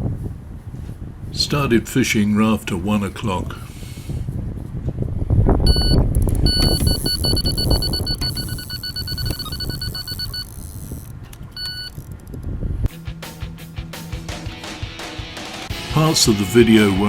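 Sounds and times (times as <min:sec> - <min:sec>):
wind rumbling on microphone: 0:00.0 - 0:12.9
electronic bite alarm beeping: 0:05.7 - 0:12.1
music: 0:12.9 - 0:17.0.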